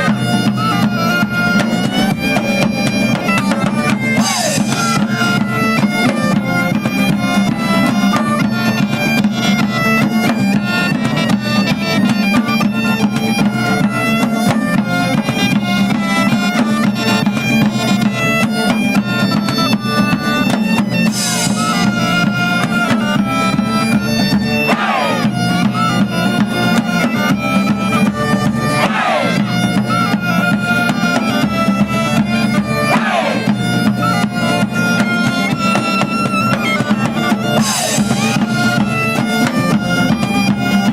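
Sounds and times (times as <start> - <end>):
drum beat: 0.0 - 9.2, 19.2 - 26.1, 27.6 - 30.2, 31.0 - 34.1, 37.1 - 39.8
bagpipe tune with drone: 0.0 - 40.9.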